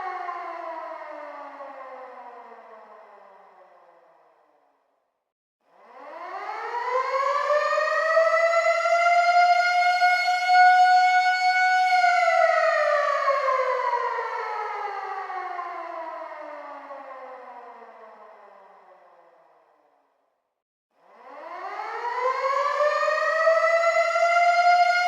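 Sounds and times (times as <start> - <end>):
air raid siren wailing: 6.0 - 17.9, 21.2 - 25.0.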